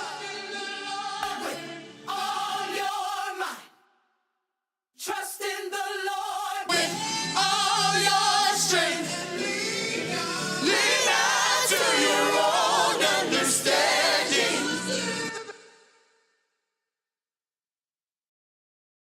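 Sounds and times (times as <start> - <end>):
gospel choir singing: 0.0 - 3.8, 5.0 - 15.8.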